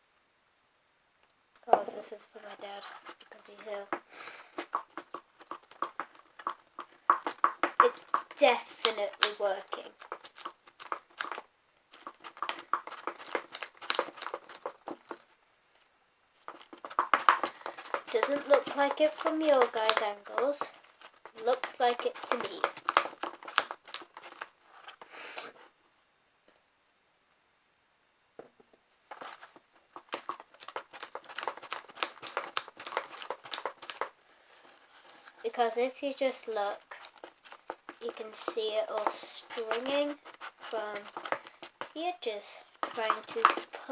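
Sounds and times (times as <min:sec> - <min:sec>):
spoon stirring sticky slime: 0:02.7 - 0:15.2, 0:16.4 - 0:25.1, 0:29.1 - 0:34.2, 0:35.1 - 0:43.9.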